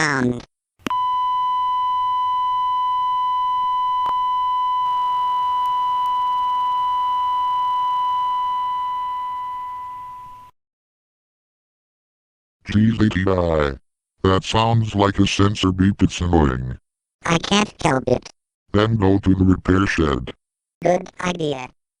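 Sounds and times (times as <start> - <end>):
long synthetic beep: 0.9 - 10.5.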